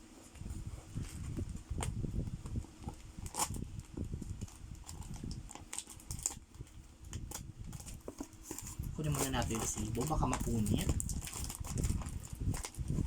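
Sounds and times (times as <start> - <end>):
cardboard package being opened: 2.8 - 13.0.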